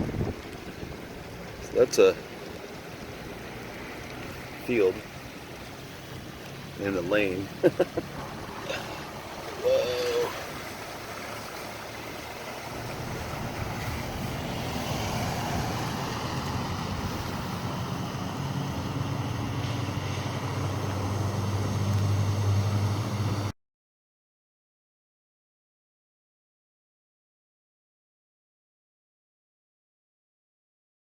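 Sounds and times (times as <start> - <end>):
low engine hum: 0.0 - 23.5
road and engine noise: 0.0 - 23.5.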